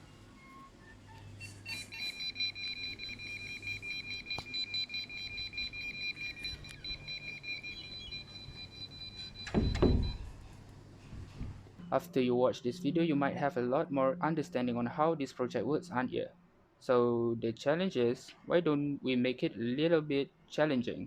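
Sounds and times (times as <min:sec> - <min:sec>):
high-pitched buzzer beeping: 0:01.5 - 0:10.4.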